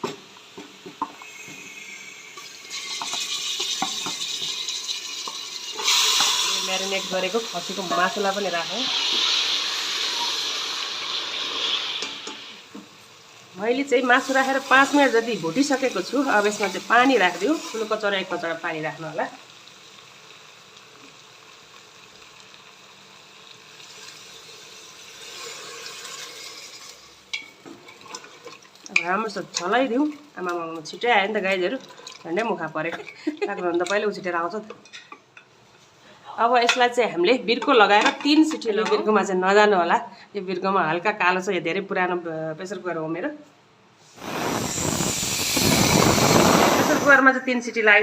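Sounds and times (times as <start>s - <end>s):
meat sizzling in hot oil: 0.0s - 33.6s, 44.0s - 47.3s
water hissing and bubbling in pan: 0.0s - 36.0s, 44.0s - 47.4s
utensil knocking a pot: 2.9s - 4.6s.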